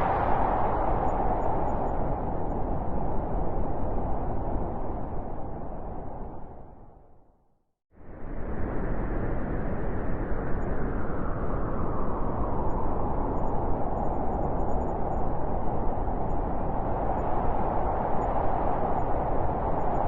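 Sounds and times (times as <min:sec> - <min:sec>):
blizzard wind howling: 0:00.0 - 0:07.4, 0:08.0 - 0:20.0.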